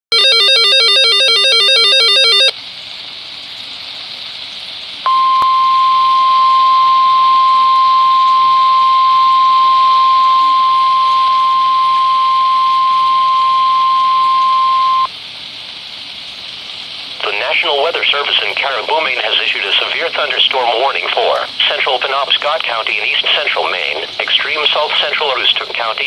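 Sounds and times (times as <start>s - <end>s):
high steady alarm beep: 0.1s - 2.5s, 5.1s - 15.1s
radio hiss: 5.1s - 15.1s, 17.1s - 26.0s
warbling digital data burst: 5.1s - 15.1s.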